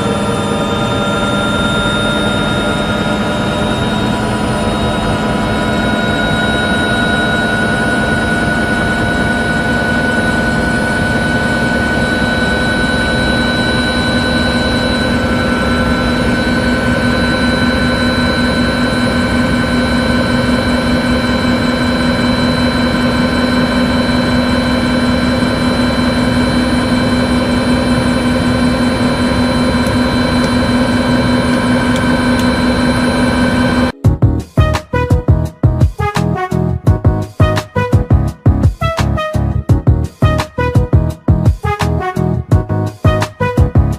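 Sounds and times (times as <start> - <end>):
helicopter rotor and engine: 0.0 - 34.4
turbine whine: 0.0 - 36.0.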